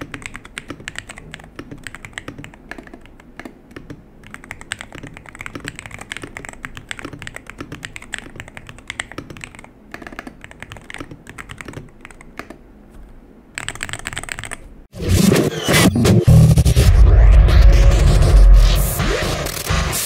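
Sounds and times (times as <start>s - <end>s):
keyboard typing: 0.0s - 14.7s.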